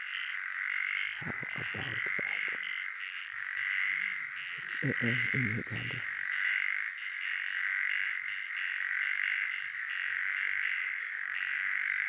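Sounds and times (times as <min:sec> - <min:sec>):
crickets chirping: 0:00.0 - 0:12.0
toads calling: 0:00.0 - 0:12.0.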